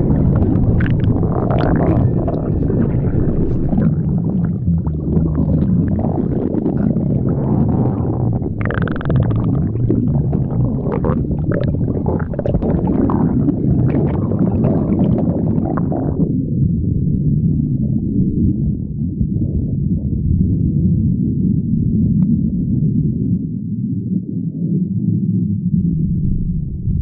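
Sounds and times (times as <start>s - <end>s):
stomach gurgling pops: 0.0s - 16.8s
squeaky stomach gurgle: 0.0s - 19.8s
stomach low rumble: 0.0s - 27.0s.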